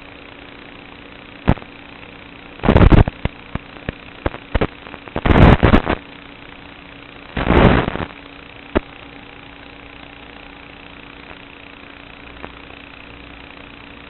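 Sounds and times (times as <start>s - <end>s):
steady motor hum: 0.0s - 14.0s
quadcopter motor noise bursts: 5.2s - 14.0s.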